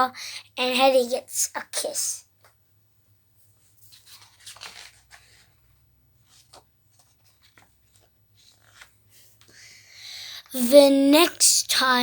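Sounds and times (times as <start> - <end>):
paper page rustling: 3.5 - 9.5.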